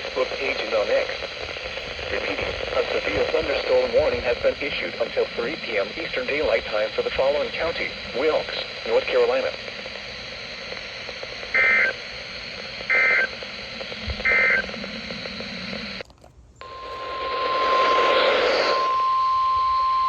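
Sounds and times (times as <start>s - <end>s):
radio hiss: 0.0s - 16.0s, 16.6s - 20.0s
buzzy warbling data bursts: 1.5s - 16.0s
loud warning alarm tone: 11.5s - 16.0s, 16.6s - 20.0s.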